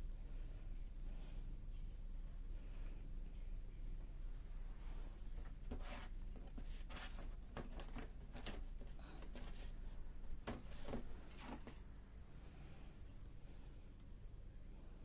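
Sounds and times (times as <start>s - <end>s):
faint low hum: 0.0s - 15.0s
soft rustling and scratching: 4.0s - 12.0s.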